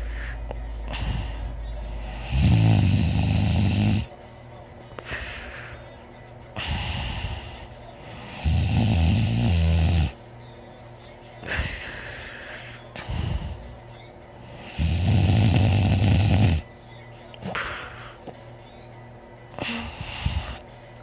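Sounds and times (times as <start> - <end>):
heavy breathing: 0.0 - 4.1, 5.0 - 8.7, 11.4 - 15.0, 17.4 - 18.4, 19.5 - 20.7
person snoring loudly: 2.0 - 4.1, 6.6 - 10.2, 14.4 - 16.6.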